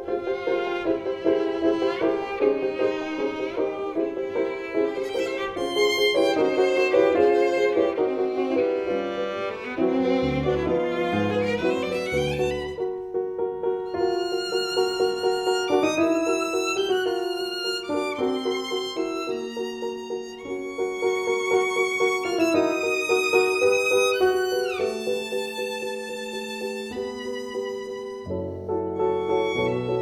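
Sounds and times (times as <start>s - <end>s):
instrumental melody: 0.0s - 30.0s.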